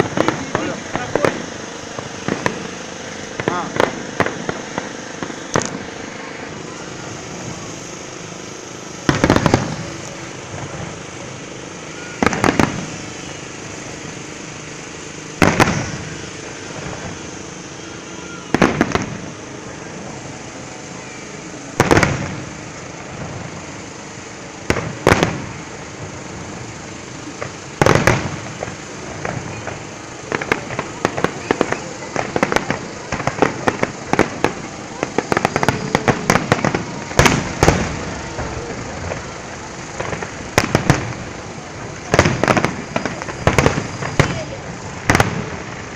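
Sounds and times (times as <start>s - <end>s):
fireworks bursting with echo: 0.0s - 45.9s
steady background noise: 0.0s - 45.9s.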